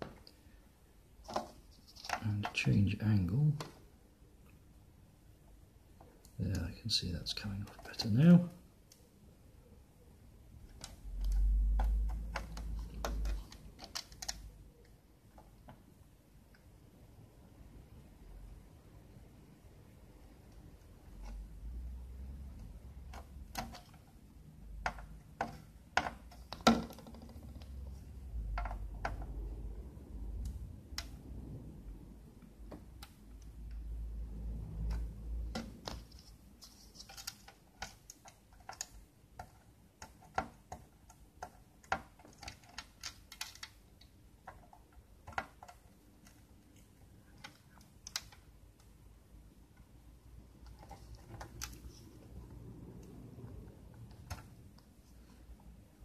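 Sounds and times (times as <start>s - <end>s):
light clicks and taps: 10.6s - 15.9s.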